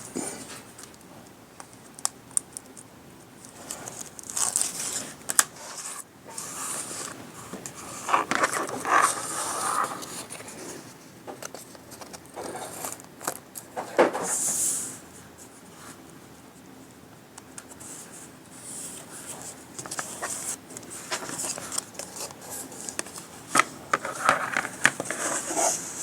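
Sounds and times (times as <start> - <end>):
craft materials crinkling and rustling: 3.4 - 14.4, 18.8 - 26.0.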